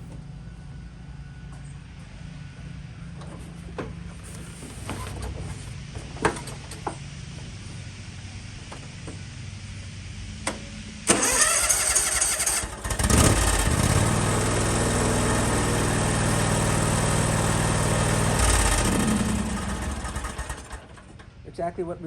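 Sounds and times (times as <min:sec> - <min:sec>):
lawn tractor engine running: 0:00.0 - 0:21.7
starter motor cranking: 0:11.1 - 0:14.1.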